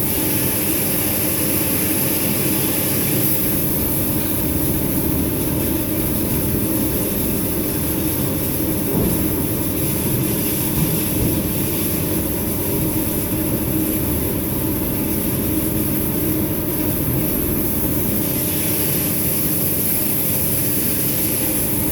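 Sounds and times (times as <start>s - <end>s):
waterjet hissing: 0.0s - 21.9s.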